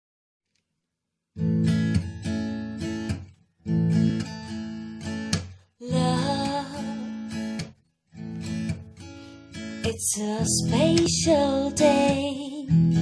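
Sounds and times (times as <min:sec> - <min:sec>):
acoustic guitar strumming chords: 0:01.4 - 0:13.0.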